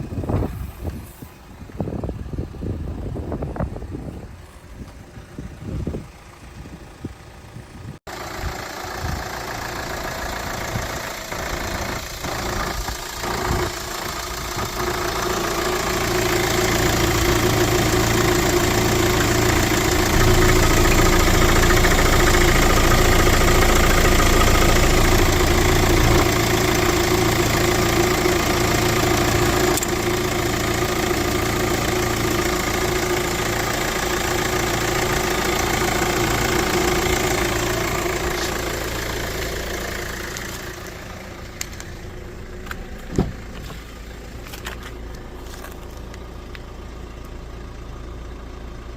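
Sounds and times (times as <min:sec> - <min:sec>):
car engine idling: 0:00.0 - 0:48.9.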